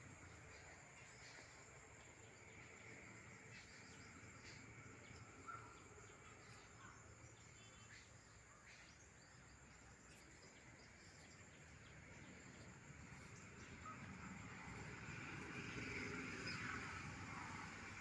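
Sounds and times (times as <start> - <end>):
faint bird chirps: 3.5 - 14.9.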